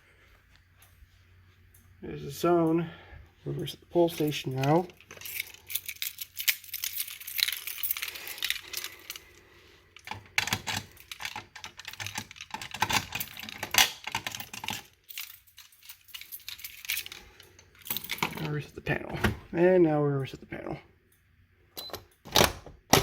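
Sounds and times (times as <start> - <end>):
fire alarm pull station rattling: 10.0 - 17.2.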